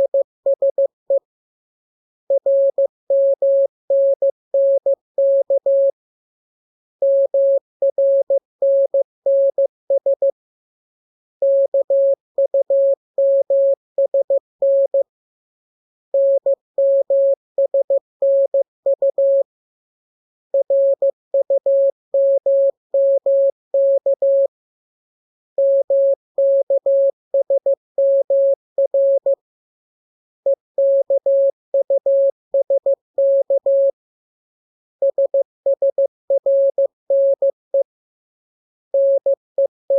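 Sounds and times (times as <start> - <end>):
morse code beeps: 0.0 - 0.9, 25.6 - 29.4, 30.8 - 33.9, 35.1 - 37.5, 39.0 - 39.8.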